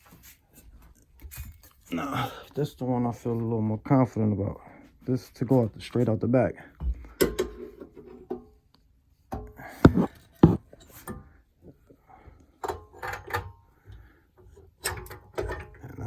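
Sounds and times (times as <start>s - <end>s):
metal exhaust pipe knocking: 9.9s - 10.6s.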